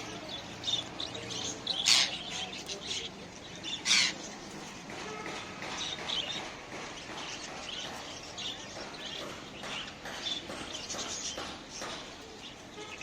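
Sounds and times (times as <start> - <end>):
parrots chirping and chattering: 0.0 - 13.0.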